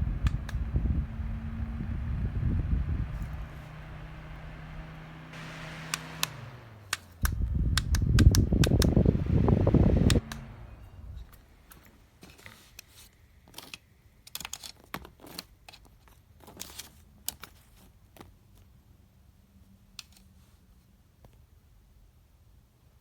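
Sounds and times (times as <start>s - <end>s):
fan blowing: 0.0s - 11.7s
light handling clicks and rustles: 10.0s - 18.8s.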